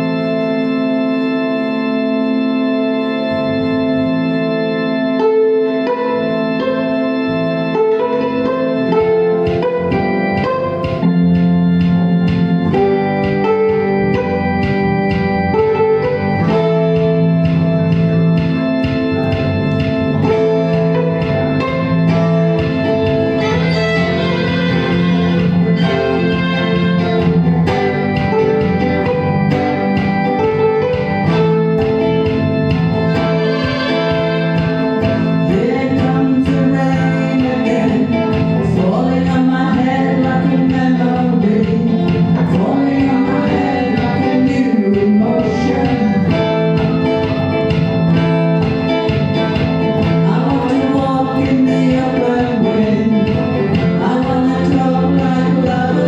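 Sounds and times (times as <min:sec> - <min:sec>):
organ-like keyboard chords: 0:00.0 - 0:56.0
steady drum beat: 0:09.5 - 0:56.0.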